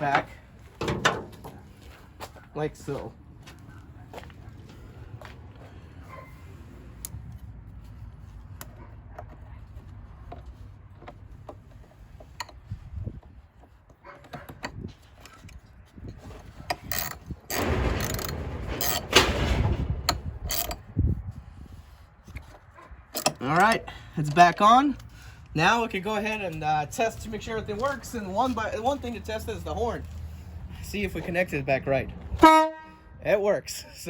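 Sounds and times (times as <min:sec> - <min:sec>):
clattering and rubbing: 0:10.4 - 0:23.4.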